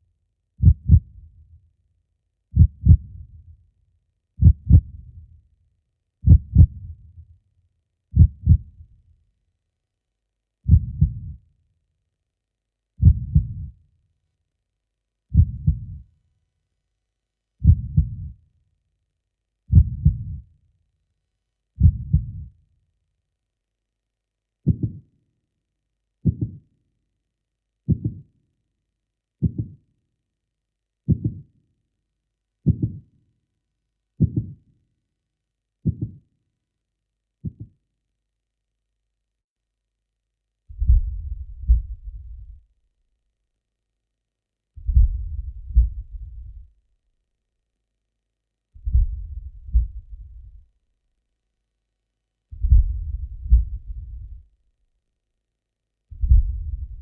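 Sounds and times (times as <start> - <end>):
heartbeat thumps: 0.6 - 1.2, 2.6 - 3.3, 4.4 - 5.2, 6.2 - 7.0, 8.2 - 8.8, 10.7 - 11.4, 13.0 - 13.7, 15.4 - 16.0, 17.6 - 18.3, 19.7 - 20.4, 21.8 - 22.5, 24.7 - 25.0, 26.3 - 26.6, 32.7 - 33.0, 34.2 - 34.6, 35.9 - 36.2, 40.7 - 42.6, 44.8 - 46.7, 48.8 - 50.7, 52.5 - 54.5, 56.1 - 57.0.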